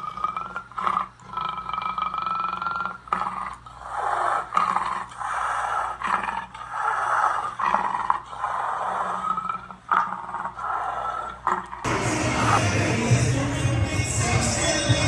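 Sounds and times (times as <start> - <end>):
crowd cheering and hollering: 11.9 - 15.0.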